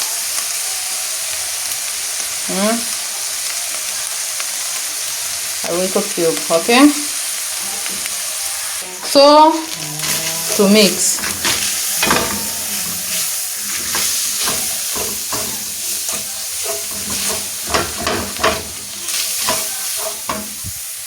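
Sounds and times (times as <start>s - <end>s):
meat sizzling in a frying pan: 0.0s - 21.0s
spoon scraping a pan: 9.0s - 20.8s.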